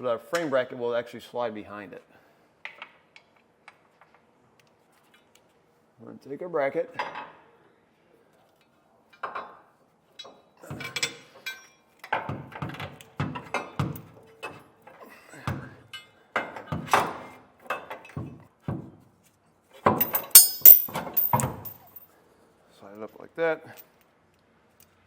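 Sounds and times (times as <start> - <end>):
metal bracket knocking and scraping: 20.0 - 21.8.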